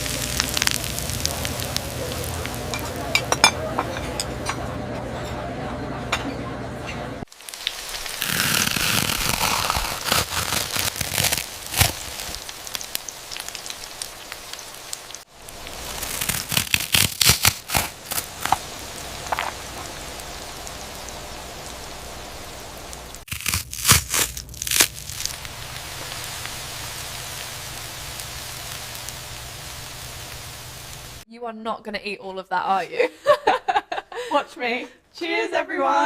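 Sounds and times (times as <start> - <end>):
loud crunching crackles: 0.0 - 3.0, 7.3 - 21.2, 22.8 - 29.2
fried chicken sizzling: 0.0 - 3.7, 7.3 - 31.2.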